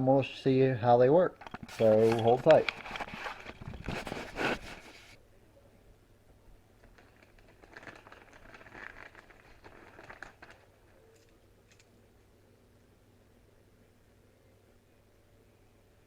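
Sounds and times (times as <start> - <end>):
packaging rustling and crinkling: 1.4 - 5.2, 6.8 - 11.3.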